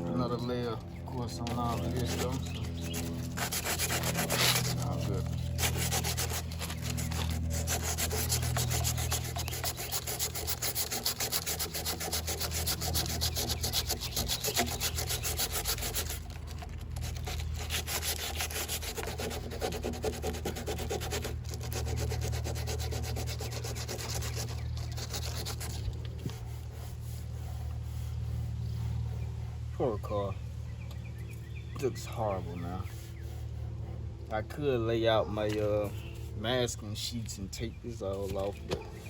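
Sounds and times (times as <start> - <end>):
low hum: 0.0 - 39.0
scraping on car body panel: 0.4 - 16.4.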